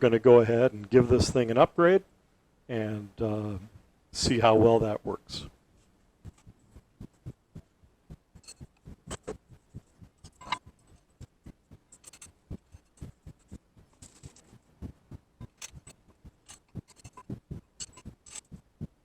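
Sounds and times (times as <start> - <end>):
metal parts clicking on workbench: 10.2 - 10.6, 12.0 - 12.3, 15.4 - 18.5.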